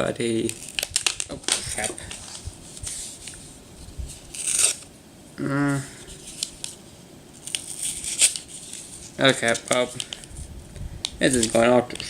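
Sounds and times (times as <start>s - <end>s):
plastic packaging crinkling: 0.2s - 4.9s, 7.4s - 10.5s, 11.1s - 12.0s
person grunting: 5.4s - 6.0s.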